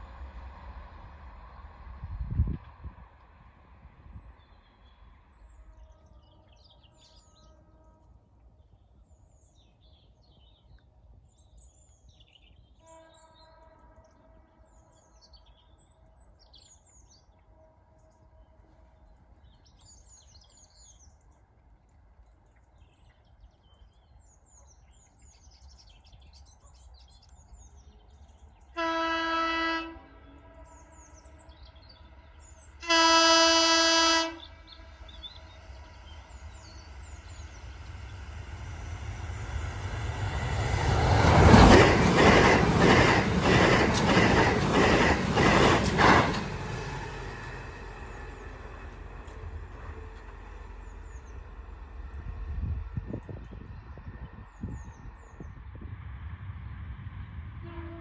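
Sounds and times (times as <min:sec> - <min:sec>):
distant horn notes: 0:28.8 - 0:31.4, 0:32.8 - 0:35.7, 0:57.6 - 0:58.0
electric train horn blasts: 0:28.8 - 0:31.5, 0:32.8 - 0:35.7, 0:57.6 - 0:58.0
birds chirping: 0:34.3 - 0:51.5.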